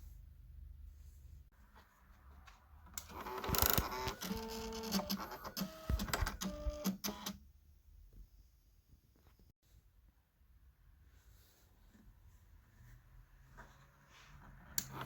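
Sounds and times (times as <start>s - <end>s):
electronic typewriter printing: 3.0s - 7.4s.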